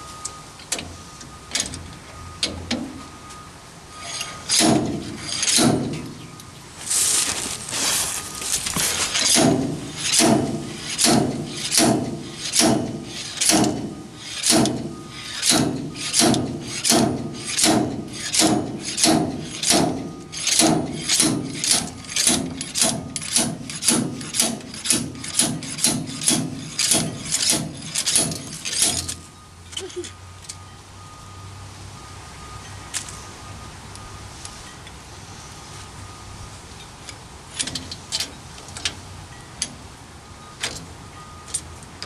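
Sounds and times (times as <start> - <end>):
slide hammer striking metal: 9.2 - 29.2.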